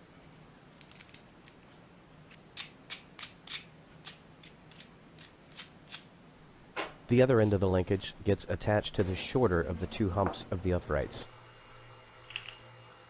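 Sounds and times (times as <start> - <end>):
wooden clamp parts clicking: 0.8 - 1.7, 2.3 - 6.1.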